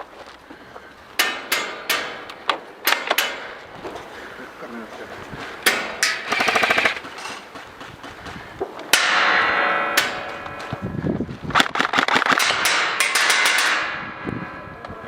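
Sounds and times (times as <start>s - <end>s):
airsoft gun full-auto bursts: 6.2s - 7.1s.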